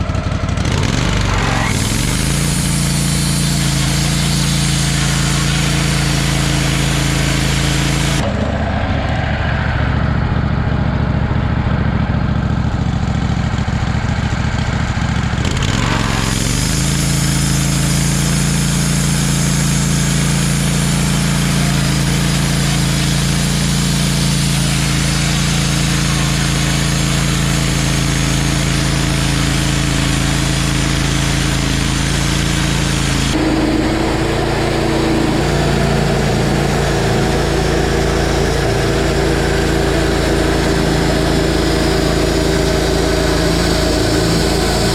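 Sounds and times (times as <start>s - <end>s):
sawmill engine running: 0.0s - 44.9s
band blade cutting log: 0.7s - 8.3s, 28.8s - 44.9s.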